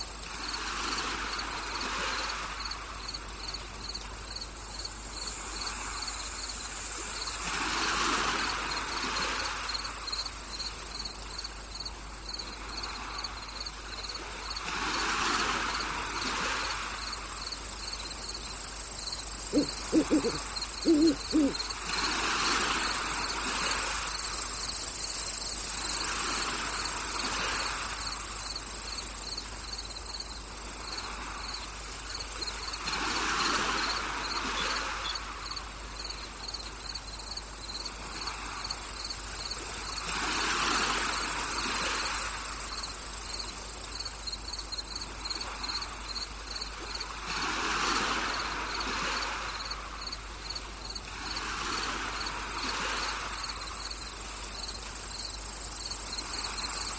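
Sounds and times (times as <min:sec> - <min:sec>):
crickets trilling: 0:00.0 - 0:56.9
pulsing insect chirp: 0:00.0 - 0:56.9.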